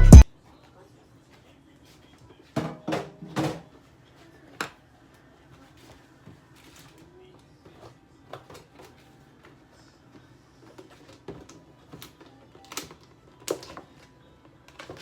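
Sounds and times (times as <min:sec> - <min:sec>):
music: 0:00.0 - 0:00.2, 0:07.8 - 0:15.0.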